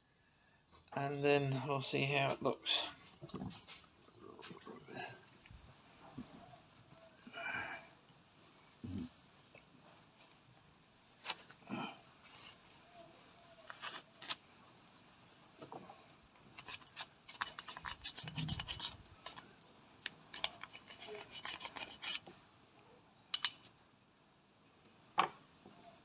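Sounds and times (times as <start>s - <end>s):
rubbing and scraping metal part: 16.6s - 19.5s, 20.3s - 22.3s.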